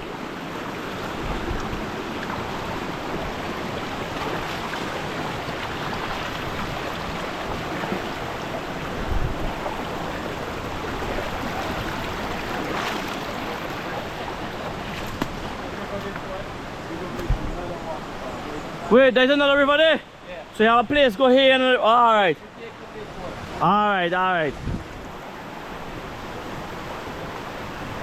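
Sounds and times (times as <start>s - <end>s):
river water rushing: 0.0s - 28.0s.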